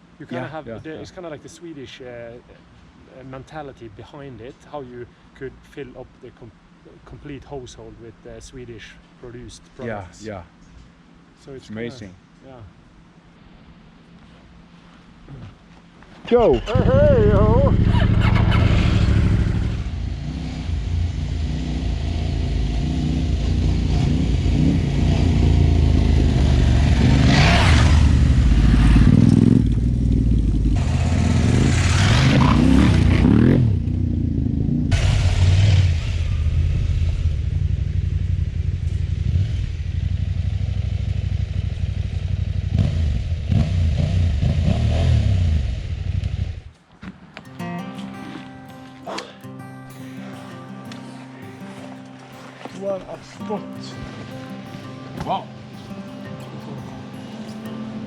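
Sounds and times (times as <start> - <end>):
motorcycle engine under load: 16.6 - 45.0.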